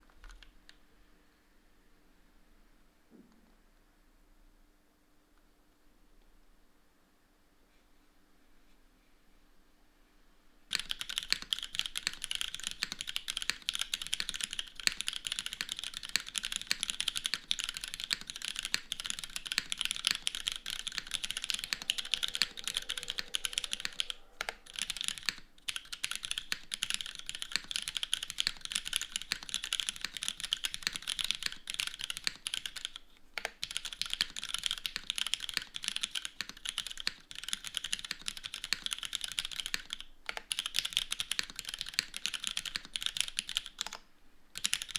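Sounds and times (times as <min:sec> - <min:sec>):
mechanical keyboard typing: 0:00.0 - 0:00.8, 0:10.7 - 0:44.9.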